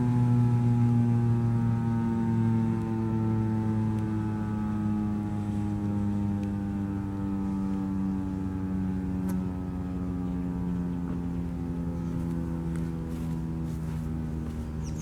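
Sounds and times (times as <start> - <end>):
siren winding down: 0.0 - 15.0.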